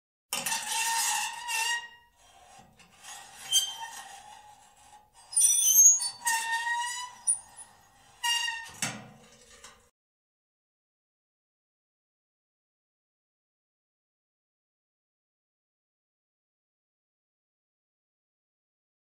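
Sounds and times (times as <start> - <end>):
metal door creaking: 5.3 - 9.9.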